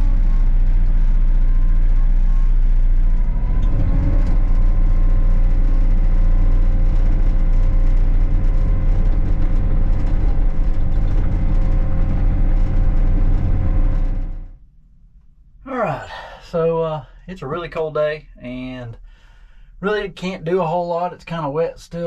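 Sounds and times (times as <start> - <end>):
excavator diesel engine running: 0.0 - 14.6.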